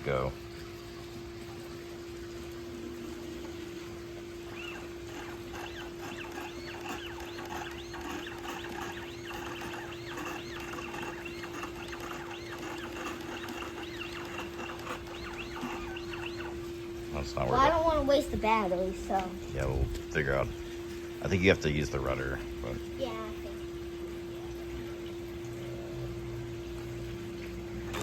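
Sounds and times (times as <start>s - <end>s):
steady low hum: 0.0s - 28.0s
small birds chirping: 4.4s - 21.1s.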